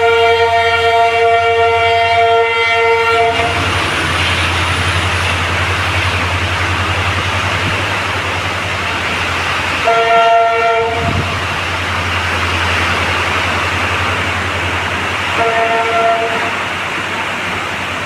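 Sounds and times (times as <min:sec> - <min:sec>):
train horn blasts: 0:00.0 - 0:04.8, 0:09.7 - 0:13.8, 0:14.4 - 0:16.8
heavy rain: 0:00.0 - 0:18.0
running train: 0:00.0 - 0:18.0.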